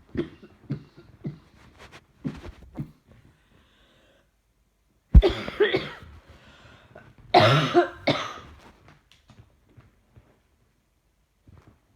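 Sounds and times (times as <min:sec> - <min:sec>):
woman coughing: 0:05.2 - 0:06.0, 0:07.4 - 0:08.5.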